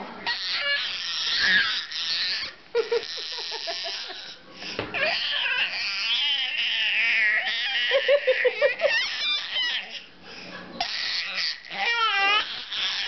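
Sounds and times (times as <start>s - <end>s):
baby squealing: 0.2s - 2.5s, 5.0s - 10.1s, 10.8s - 13.0s.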